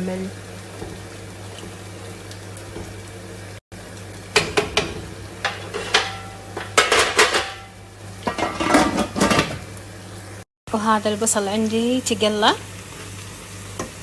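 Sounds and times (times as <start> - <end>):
metal utensils clinking on cookware: 4.4 - 9.6.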